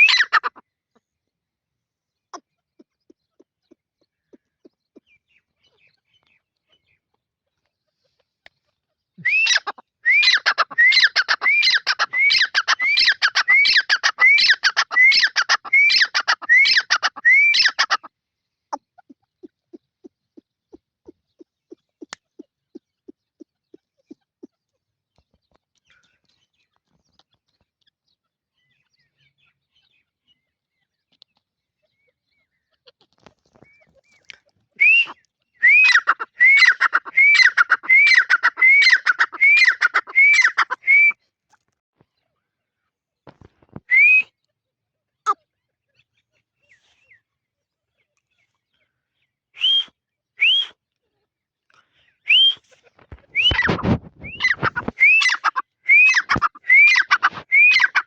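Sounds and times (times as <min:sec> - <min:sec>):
faint bird chirps: 0:02.0 - 0:58.0
francolin whistled calls: 0:09.2 - 0:17.8, 0:34.8 - 0:41.2, 0:49.6 - 0:50.8, 0:52.2 - 0:52.7, 0:53.3 - 0:58.0.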